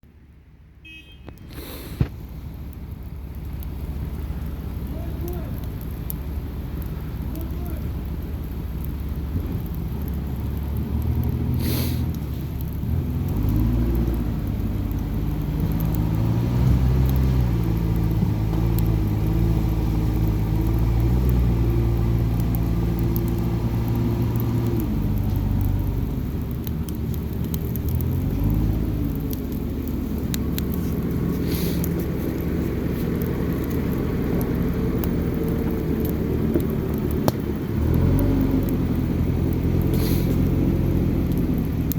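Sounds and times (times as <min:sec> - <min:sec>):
campfire crackling: 0:00.0 - 0:41.9
engine rumbling: 0:00.0 - 0:41.9
brief hisses: 0:01.4 - 0:02.2, 0:11.6 - 0:12.1, 0:31.4 - 0:31.9, 0:39.9 - 0:40.4.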